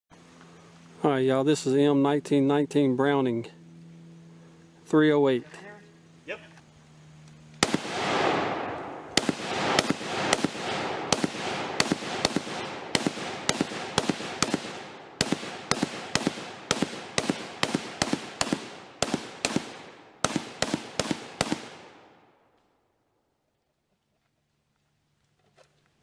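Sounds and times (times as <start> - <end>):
machine gun single shots: 7.6 - 22.1.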